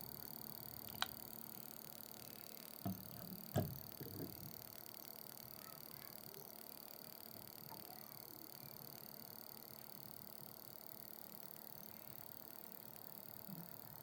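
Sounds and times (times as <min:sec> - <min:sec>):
motor rapid light ticking: 0:00.0 - 0:13.4
short knocks: 0:02.9 - 0:04.5.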